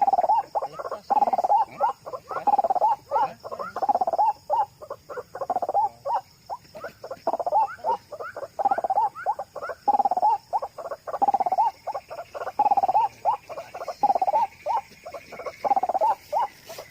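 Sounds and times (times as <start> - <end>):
bird calling harsh wak notes: 7.2 - 16.9.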